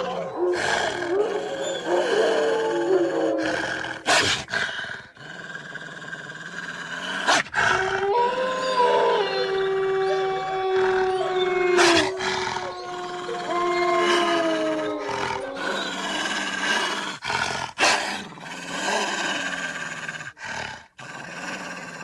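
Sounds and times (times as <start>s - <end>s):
wolf howling: 0.0s - 4.1s, 7.4s - 16.9s
wolf growling: 0.0s - 22.0s.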